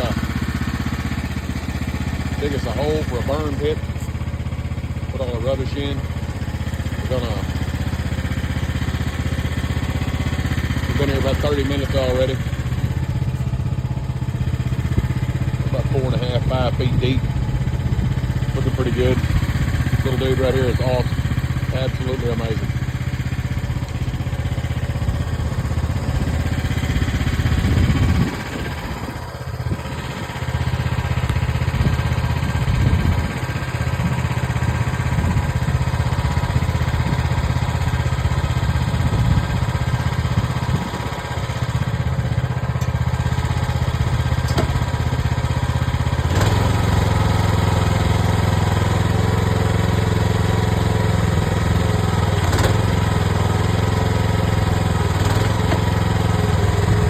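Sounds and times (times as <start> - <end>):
mini excavator engine running: 0.0 - 57.0.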